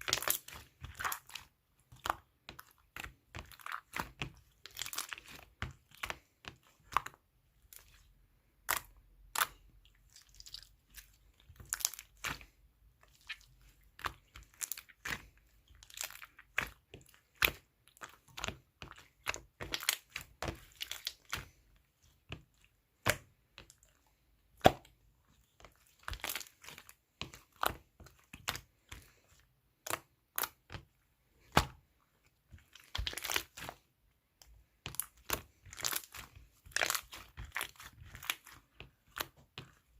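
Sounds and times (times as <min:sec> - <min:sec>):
slime squishing with clicks and pops: 0:00.0 - 0:39.9.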